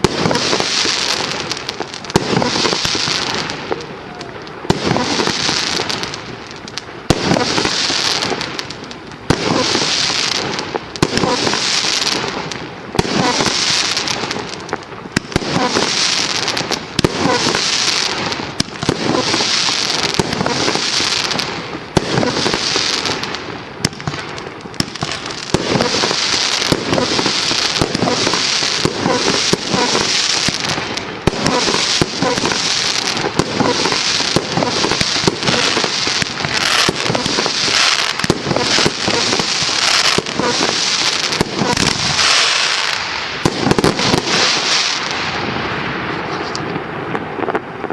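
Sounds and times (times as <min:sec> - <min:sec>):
firework hissing crackling shower: 0:00.0 - 0:47.9
firework reports: 0:00.0 - 0:47.9.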